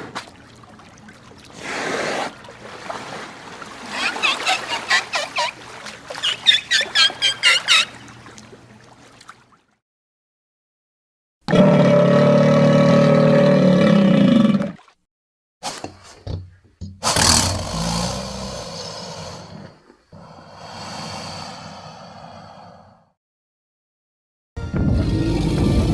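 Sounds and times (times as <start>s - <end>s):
pulsing calls: 3.9s - 8.2s
dinosaur roars: 11.5s - 14.8s.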